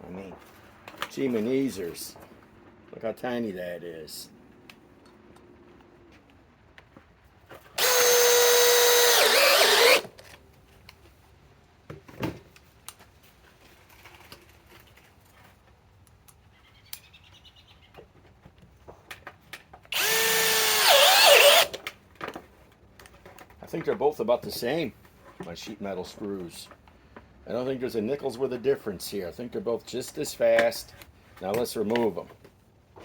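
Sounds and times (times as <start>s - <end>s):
drill driving screw into metal: 7.8s - 10.1s, 19.9s - 21.8s.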